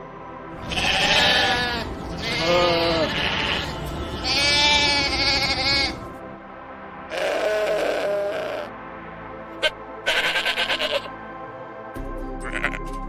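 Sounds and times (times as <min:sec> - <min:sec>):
sheep bleating: 0:00.6 - 0:06.0, 0:07.1 - 0:08.7, 0:09.6 - 0:11.2, 0:12.4 - 0:12.9.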